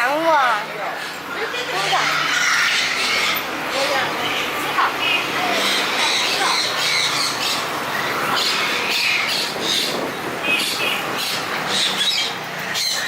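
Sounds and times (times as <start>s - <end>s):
caged birds squawking and chirping: 9.3s - 11.2s.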